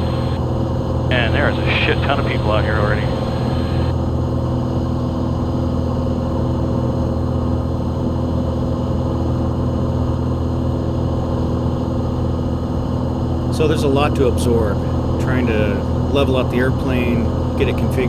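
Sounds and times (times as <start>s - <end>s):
light aircraft engine droning: 1.1s - 18.0s.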